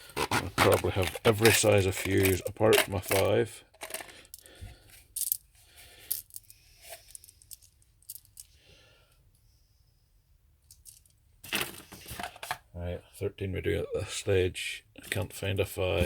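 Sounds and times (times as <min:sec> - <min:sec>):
metal fuses clinking: 0:00.2 - 0:04.5.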